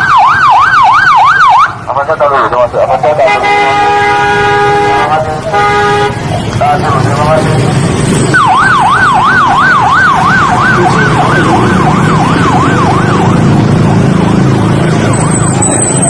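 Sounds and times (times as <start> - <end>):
low engine rumble: 1.8 - 16.0
bus horn wailing: 3.2 - 6.4.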